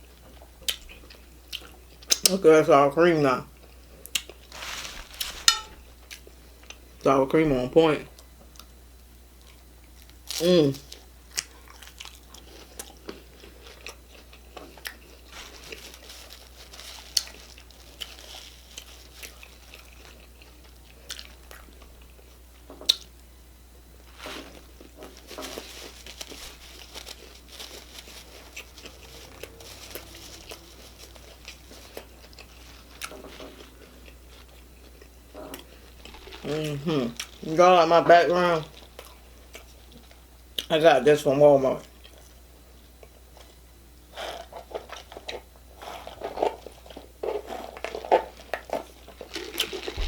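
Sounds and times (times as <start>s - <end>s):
taco shells crunching: 3.6s - 6.8s, 9.4s - 23.2s, 23.9s - 40.8s, 44.2s - 50.0s
chewing: 10.9s - 22.2s, 24.2s - 37.5s, 44.2s - 50.0s.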